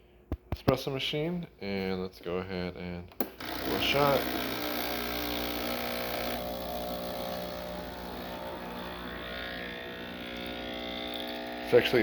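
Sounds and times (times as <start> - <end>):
espresso machine pump buzzing: 3.4 - 12.0.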